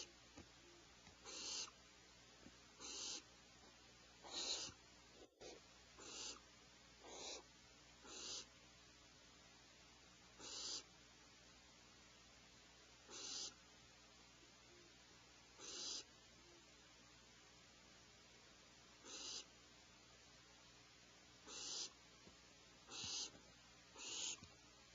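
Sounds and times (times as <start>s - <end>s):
owlets hissing begging calls: 1.2s - 1.8s, 2.8s - 3.3s, 4.2s - 4.8s, 5.4s - 6.4s, 7.0s - 8.5s, 10.4s - 10.9s, 13.1s - 13.6s, 15.6s - 16.1s, 19.0s - 19.5s, 21.5s - 22.0s, 22.9s - 23.4s, 24.0s - 24.4s.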